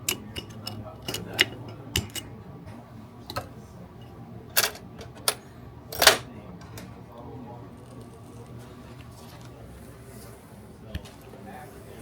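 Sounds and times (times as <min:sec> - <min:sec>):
metal tool clicks and taps: 0:00.0 - 0:02.2.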